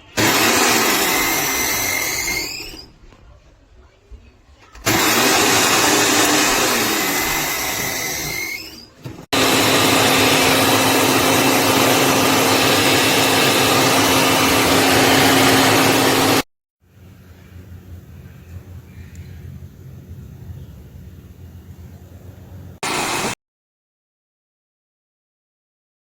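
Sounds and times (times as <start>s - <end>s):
blender running: 0.1s - 2.9s, 4.8s - 8.7s, 9.3s - 16.5s, 22.8s - 23.4s.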